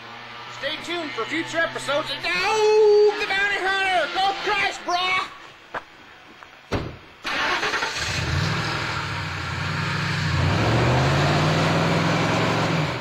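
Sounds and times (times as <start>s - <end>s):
truck engine revving: 7.3s - 13.0s.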